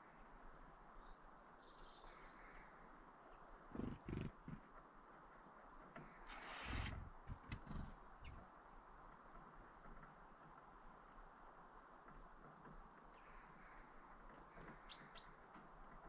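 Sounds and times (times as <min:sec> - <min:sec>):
brief rustle: 0:06.2 - 0:08.4.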